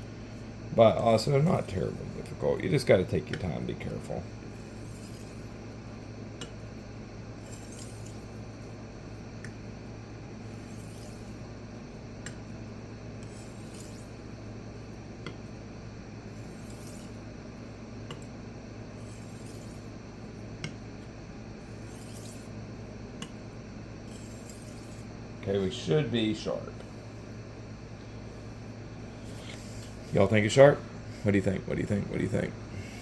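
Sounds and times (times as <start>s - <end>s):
steady low hum: 0.0s - 33.0s
knife scraping on stone: 4.5s - 5.6s, 7.4s - 8.3s, 10.4s - 11.4s, 13.2s - 14.2s, 16.3s - 17.2s, 18.9s - 20.0s, 21.6s - 22.6s, 24.0s - 25.1s, 29.2s - 30.2s.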